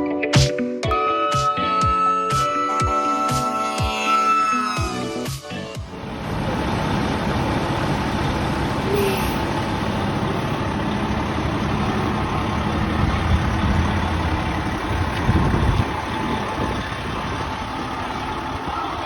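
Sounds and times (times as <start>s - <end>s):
diesel engine idling: 5.5s - 19.0s.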